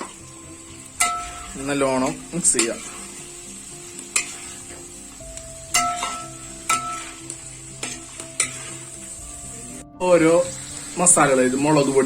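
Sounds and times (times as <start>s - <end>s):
paste sizzling in hot oil: 0.0s - 12.0s
spatula knocking against pan: 5.7s - 7.2s.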